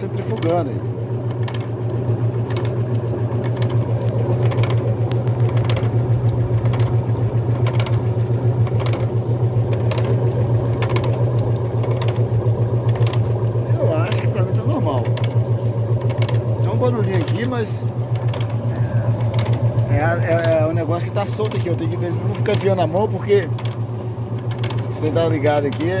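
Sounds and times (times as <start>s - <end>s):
loose object rattling: 0.0s - 26.0s
washing machine motor hum: 0.0s - 26.0s.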